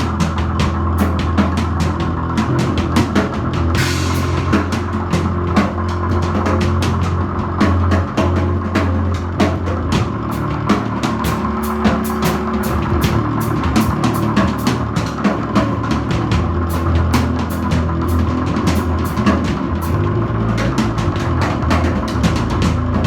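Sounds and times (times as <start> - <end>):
low bass: 0.0 - 23.0.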